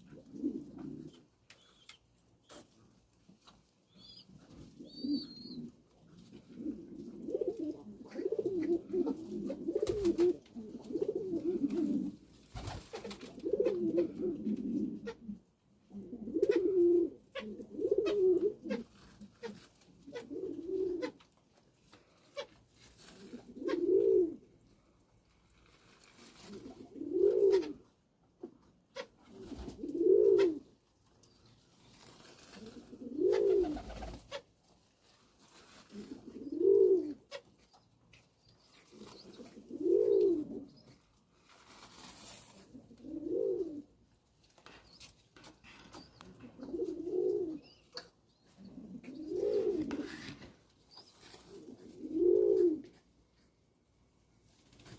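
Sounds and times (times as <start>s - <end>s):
pigeon cooing: 0.0s - 2.7s, 3.9s - 21.2s, 22.4s - 25.0s, 26.3s - 27.9s, 28.9s - 30.7s, 32.5s - 34.4s, 35.6s - 37.5s, 38.6s - 41.0s, 42.5s - 44.0s, 45.8s - 53.1s.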